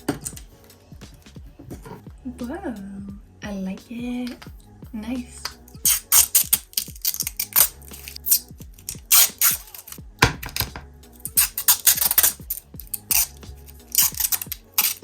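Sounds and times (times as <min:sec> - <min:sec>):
background music: 0:00.0 - 0:15.0
plastic parts clicking and clattering: 0:05.9 - 0:15.0.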